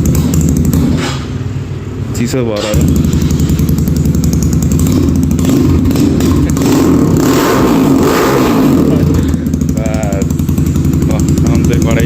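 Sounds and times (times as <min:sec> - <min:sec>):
dirt bike engine revving: 0:02.6 - 0:12.0.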